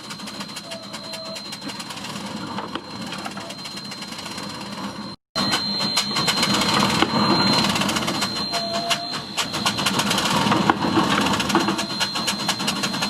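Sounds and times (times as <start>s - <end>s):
steady high thin tone: 0.0s - 13.0s
machinery clatter of knocks: 5.4s - 13.0s.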